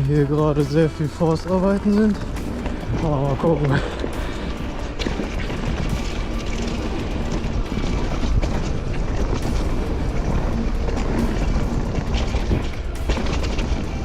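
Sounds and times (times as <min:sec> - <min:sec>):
bike rattling and clicking: 0:00.0 - 0:14.0
tyres rolling over dirt: 0:00.0 - 0:14.0
wind rumble on microphone: 0:00.0 - 0:14.0.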